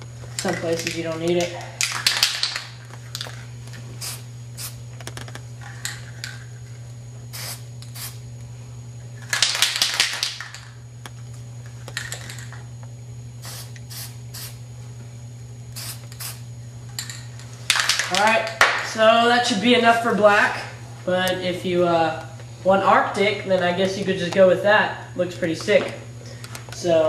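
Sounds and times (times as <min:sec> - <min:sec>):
steady low hum: 0:00.0 - 0:27.0
spray can hissing: 0:04.0 - 0:04.8, 0:07.3 - 0:08.2, 0:13.4 - 0:14.6, 0:15.7 - 0:16.5.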